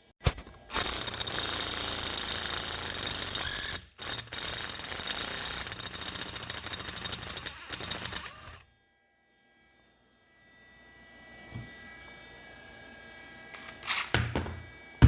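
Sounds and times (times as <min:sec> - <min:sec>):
power wrench running: 0:00.7 - 0:08.6, 0:13.6 - 0:14.2
rapid clicking of wrench: 0:00.7 - 0:08.6.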